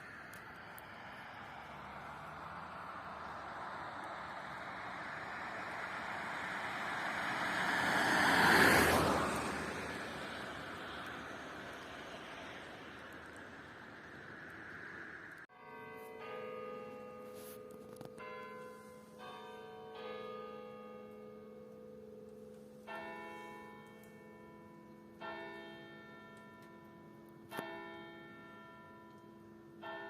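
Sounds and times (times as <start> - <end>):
church bells ringing: 15.6 - 30.0.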